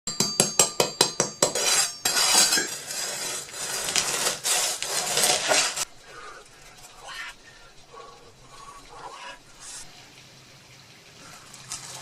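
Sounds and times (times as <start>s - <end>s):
cutlery clinking on dishware: 0.1s - 2.8s
cutlery clattering and scraping: 1.0s - 4.4s.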